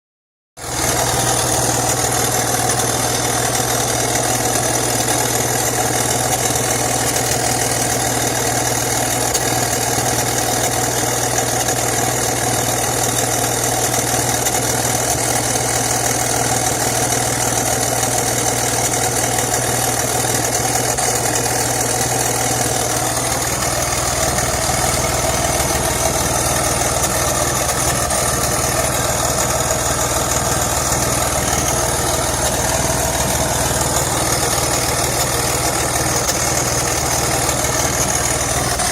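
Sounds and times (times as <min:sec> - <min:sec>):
car engine idling: 0:00.6 - 0:38.9.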